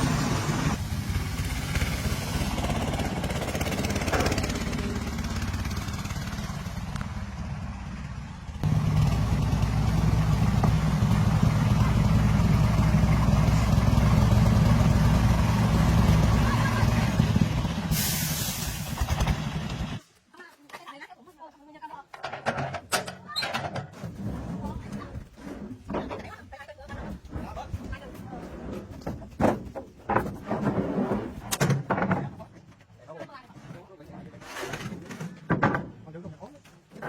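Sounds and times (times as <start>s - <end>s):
engine running: 0.0s - 20.0s.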